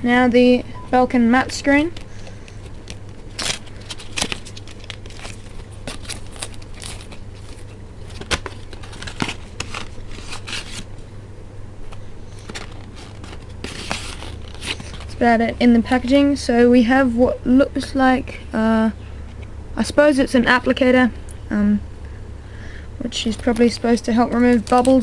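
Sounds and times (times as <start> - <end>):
steady low hum: 0.0 - 25.0
packaging clicks and crackles: 2.0 - 10.8, 12.4 - 15.2, 23.3 - 25.0.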